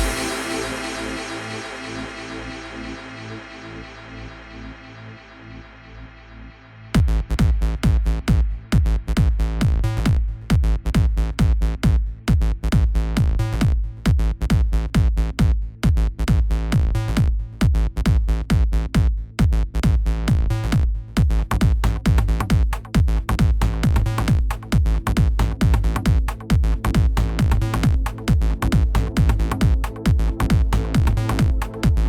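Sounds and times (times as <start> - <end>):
electronic dance music: 0.0 - 5.2, 23.8 - 32.0.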